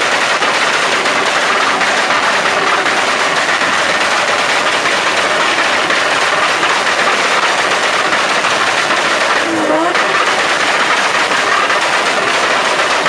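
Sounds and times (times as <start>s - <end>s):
car engine: 0.9s - 12.3s
turbo flutter chattering: 1.4s - 11.8s.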